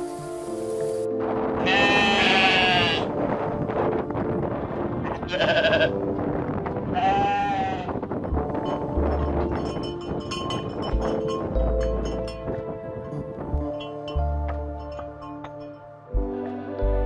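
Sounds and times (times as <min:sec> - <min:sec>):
sheep bleating: 0:01.6 - 0:03.1, 0:05.2 - 0:05.9, 0:07.0 - 0:08.0.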